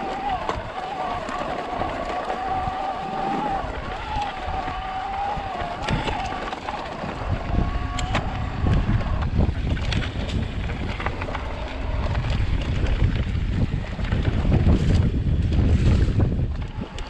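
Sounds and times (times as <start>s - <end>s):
wind buffeting microphone: 0.0s - 17.0s
bike clicks and rattles: 3.7s - 17.0s.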